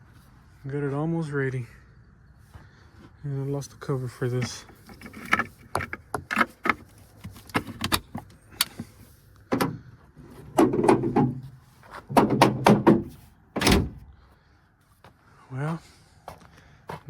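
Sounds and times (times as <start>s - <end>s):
metal parts clicking and clunking: 4.3s - 9.8s.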